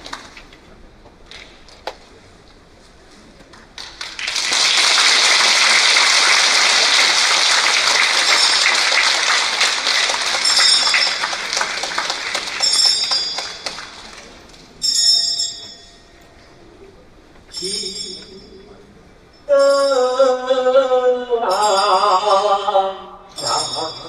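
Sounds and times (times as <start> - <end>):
audience applauding: 3.5 - 14.7.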